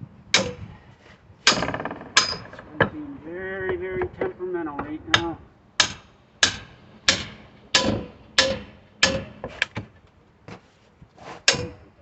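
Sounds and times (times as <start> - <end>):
sledgehammer striking steel bar: 0.3 - 0.6, 1.4 - 2.6, 5.2 - 9.6, 11.4 - 11.8.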